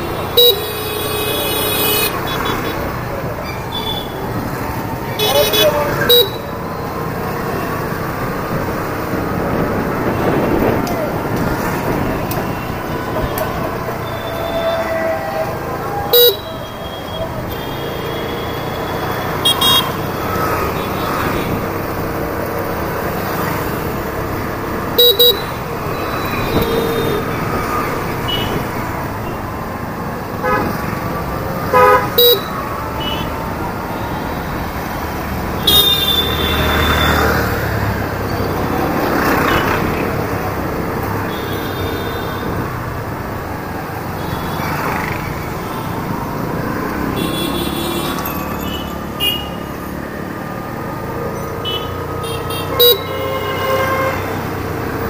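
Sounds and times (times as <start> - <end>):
vehicle horns tooting: 0.0 - 4.3, 5.0 - 6.9, 12.4 - 21.6, 24.8 - 29.5, 30.3 - 31.0, 31.6 - 34.6, 35.5 - 37.6, 41.1 - 42.8, 46.9 - 49.7, 51.6 - 54.7.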